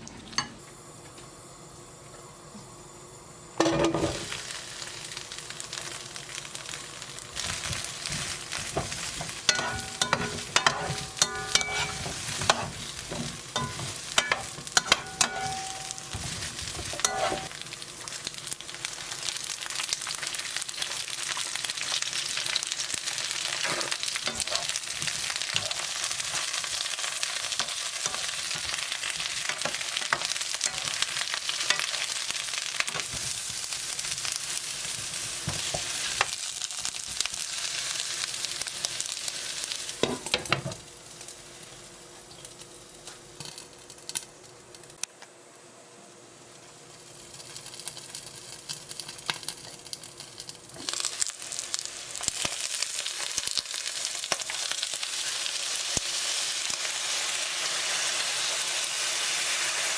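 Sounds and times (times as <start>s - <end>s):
eggplant sizzling in a frying pan: 0.1s - 59.9s
utensil clinking against pan: 9.5s - 16.2s.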